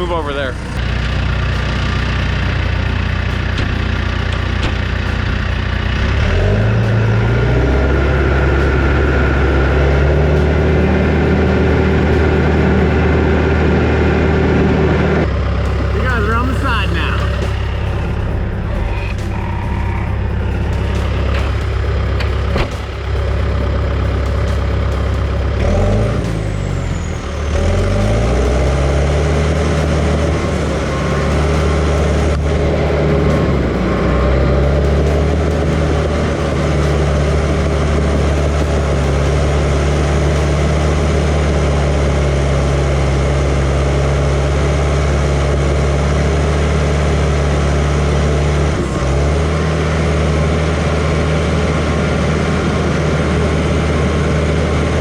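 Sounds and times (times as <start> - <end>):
dozer diesel engine under load: 0.0 - 55.0.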